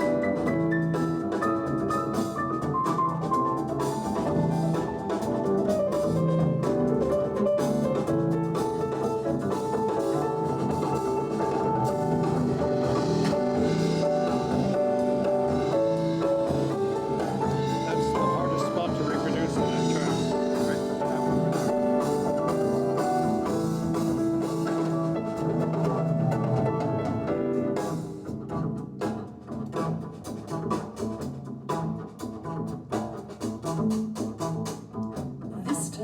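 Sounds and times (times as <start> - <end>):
drum kit: 0.0 - 36.0
instrumental jazz: 0.0 - 36.0.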